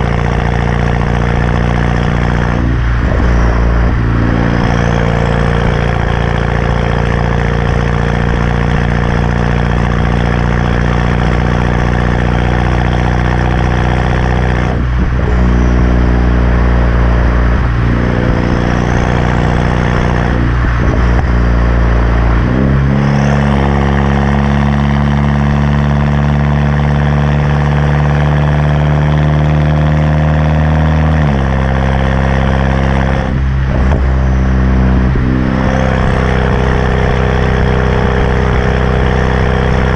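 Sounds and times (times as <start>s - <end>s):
car engine loud drone: 0.0s - 39.9s.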